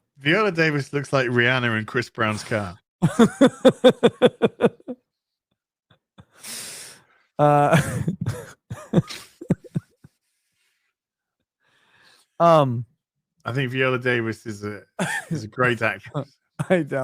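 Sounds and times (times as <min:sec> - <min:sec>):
man laughing: 0:03.0 - 0:05.0, 0:07.4 - 0:10.1, 0:15.0 - 0:17.0
breathy exhale: 0:06.3 - 0:07.2.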